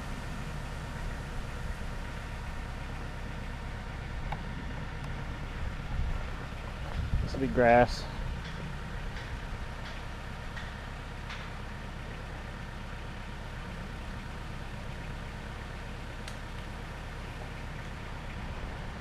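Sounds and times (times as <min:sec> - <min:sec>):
engine idling: 0:00.0 - 0:19.0
faint ticks: 0:16.2 - 0:16.7.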